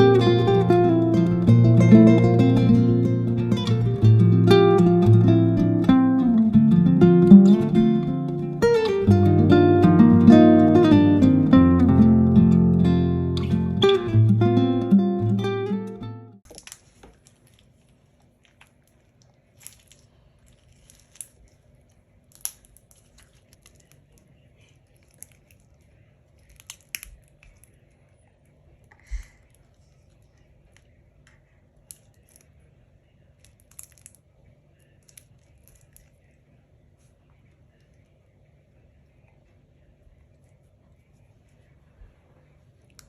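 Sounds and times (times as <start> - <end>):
slime popping: 16.4 - 21.7, 22.3 - 24.3
slime clicks and crackles: 16.4 - 28.0, 33.4 - 34.2, 34.9 - 36.3.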